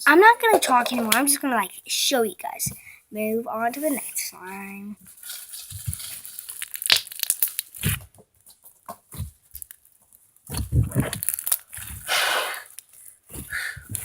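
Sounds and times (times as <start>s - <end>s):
plastic bag crinkling and tearing: 5.0s - 14.0s.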